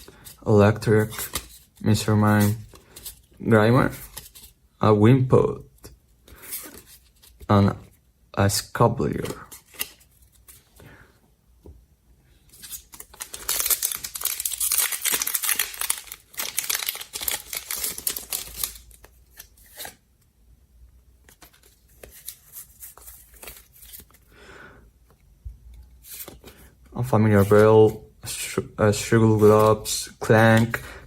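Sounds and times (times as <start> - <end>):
cards rustling and clicking: 0.0 - 4.5, 9.1 - 10.8, 12.4 - 20.0, 21.2 - 24.3, 26.0 - 26.6, 28.4 - 30.9
foil wrapper tearing and crinkling: 12.7 - 19.1.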